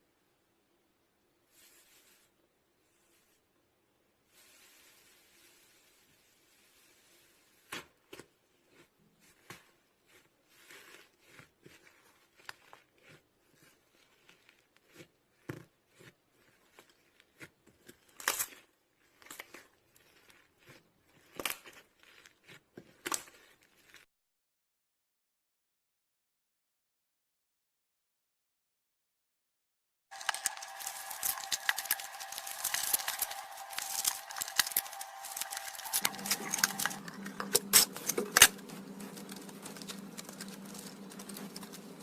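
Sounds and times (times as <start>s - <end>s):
slime popping and crackling: 30.1s - 42.0s.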